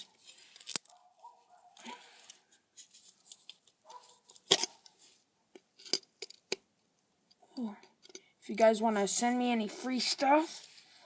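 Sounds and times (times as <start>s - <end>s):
metal tools scraping and prying: 5.6s - 6.6s, 7.8s - 8.3s.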